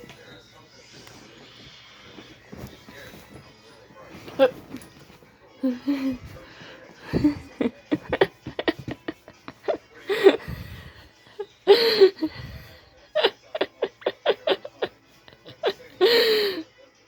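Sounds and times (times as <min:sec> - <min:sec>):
person laughing: 0:07.1 - 0:10.5.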